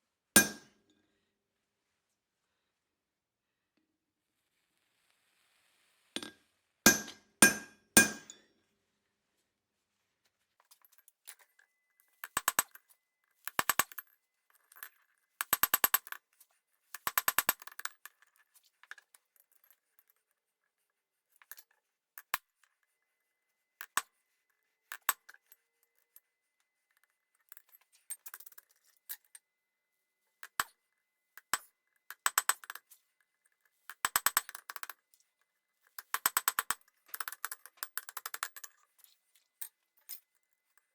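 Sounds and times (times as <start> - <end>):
hammer striking steel on anvil: 0.4 - 0.8, 6.9 - 8.5.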